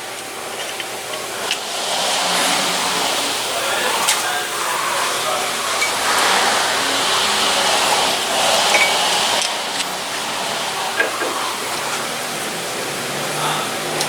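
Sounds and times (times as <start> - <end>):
workshop background hiss: 0.0 - 14.0.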